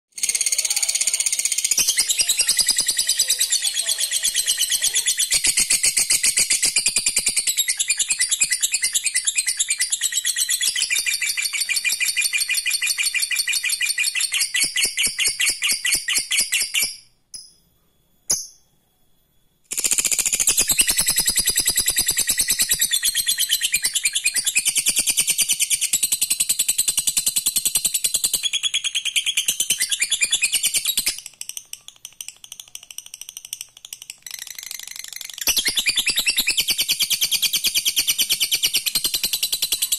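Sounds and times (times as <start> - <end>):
bird chattering trill: 0.2 - 17.0.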